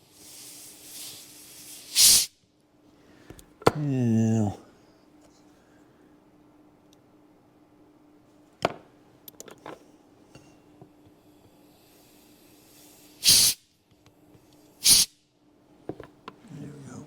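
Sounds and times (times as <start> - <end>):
faint hiss: 0.0 - 2.4, 11.2 - 13.8, 14.4 - 15.2.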